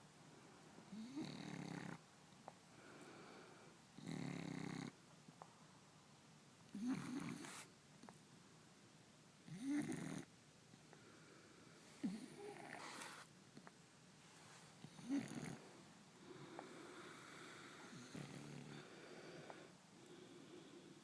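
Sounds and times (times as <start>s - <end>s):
dog snoring: 0.9s - 2.0s, 4.0s - 5.0s, 6.7s - 7.7s, 9.4s - 10.3s, 12.0s - 13.3s, 14.8s - 20.9s.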